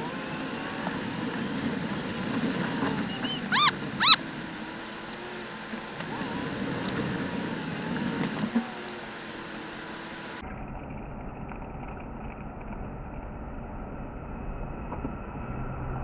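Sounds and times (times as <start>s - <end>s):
dog yelping: 3.0s - 5.8s.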